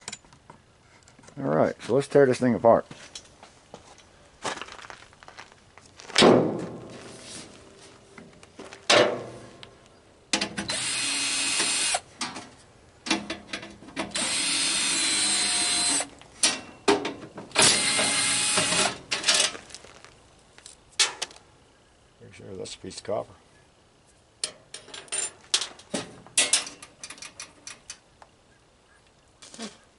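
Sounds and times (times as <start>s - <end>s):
power drill running: 10.7s - 12.0s, 14.1s - 16.1s, 17.6s - 19.0s.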